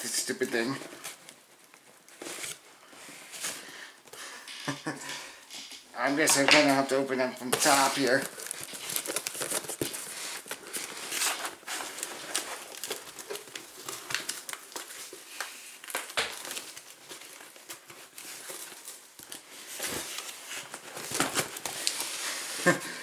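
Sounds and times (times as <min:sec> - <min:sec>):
cardboard box crinkling and tearing: 0:07.5 - 0:22.6.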